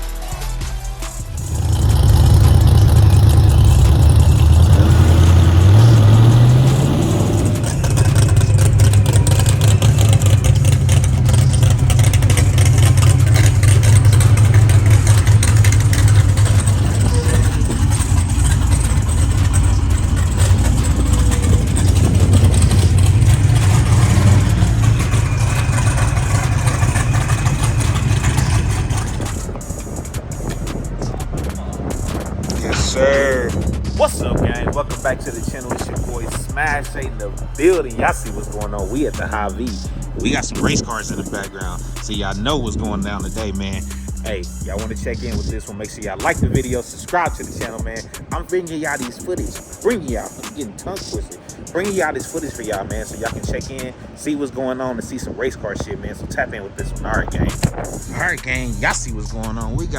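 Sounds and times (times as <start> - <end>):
race car engine idling and revving: 0.0 - 54.2, 56.1 - 59.9.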